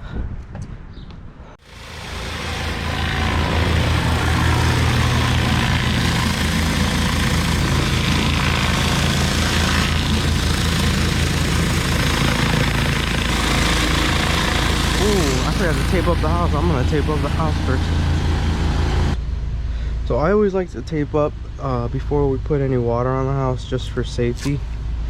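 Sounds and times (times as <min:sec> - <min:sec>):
pressure washer engine running: 0:01.6 - 0:19.2.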